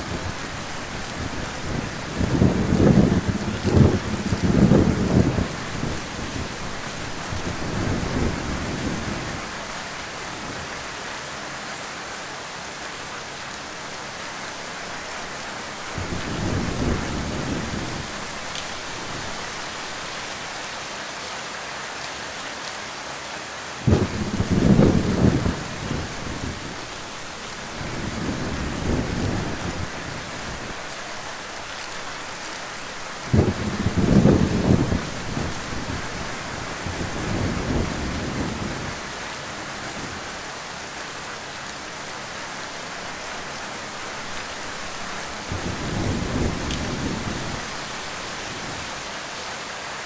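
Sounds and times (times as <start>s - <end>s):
heavy rain falling: 0.0s - 50.0s
thunder rolling: 1.2s - 9.4s, 23.9s - 26.9s, 27.8s - 30.8s, 33.3s - 39.0s, 45.5s - 47.8s
thunder crack: 23.9s - 26.6s.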